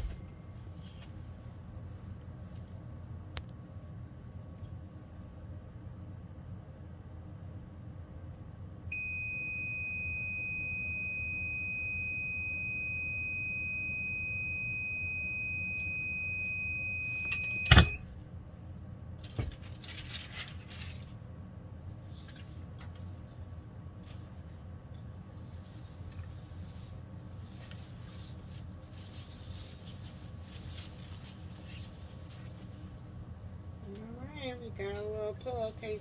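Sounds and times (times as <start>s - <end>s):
high-pitched timer beep: 9.0s - 18.0s
sharp click: 17.2s - 18.0s
rustling: 25.5s - 33.0s.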